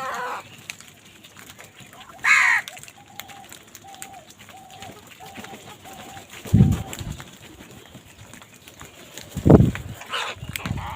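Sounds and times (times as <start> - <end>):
crow cawing: 2.2 - 2.7.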